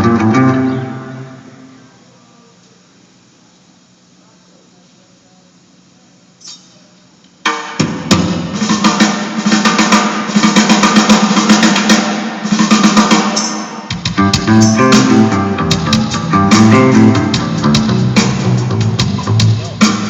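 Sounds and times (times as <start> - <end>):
rock band playing: 0.0 - 1.8, 7.8 - 20.0
faint steady hum: 0.0 - 7.5
snare and cymbal hits: 7.4 - 20.0.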